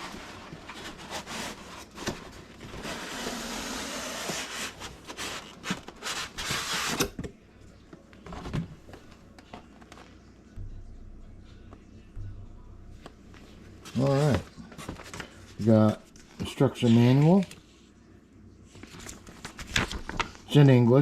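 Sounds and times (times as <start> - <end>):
packaging rustling and crinkling: 18.8 - 20.6.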